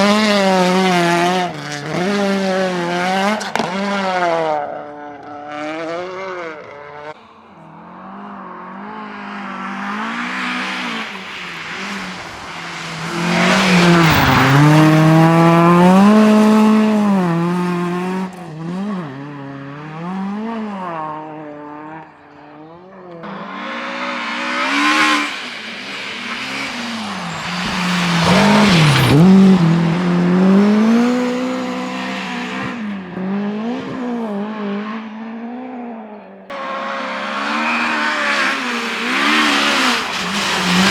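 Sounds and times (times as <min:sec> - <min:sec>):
rally cars passing at speed: 0:00.0 - 0:40.9.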